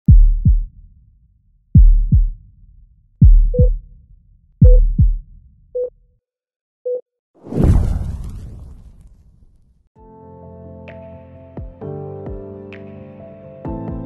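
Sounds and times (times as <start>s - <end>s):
heartbeat thumps: 0.1s - 0.7s, 1.8s - 2.4s, 3.2s - 3.9s, 4.6s - 5.3s.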